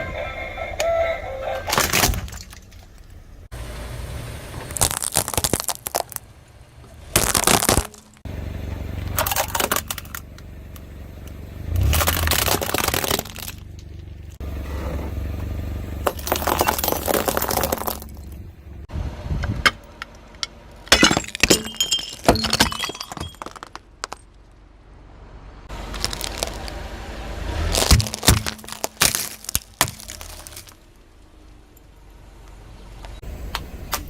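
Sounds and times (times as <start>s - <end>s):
low engine rumble: 0.0s - 34.0s
tyre crushing brittle objects: 4.7s - 6.3s, 7.1s - 8.3s, 11.7s - 13.8s, 16.0s - 18.4s, 20.9s - 24.2s, 25.8s - 26.9s, 27.6s - 30.8s.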